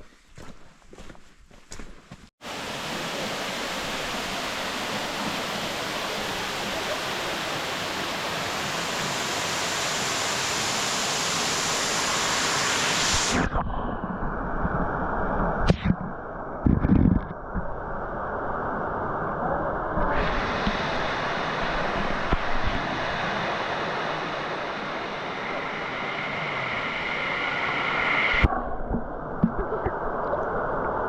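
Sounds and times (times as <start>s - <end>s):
rushing water: 2.4s - 13.5s.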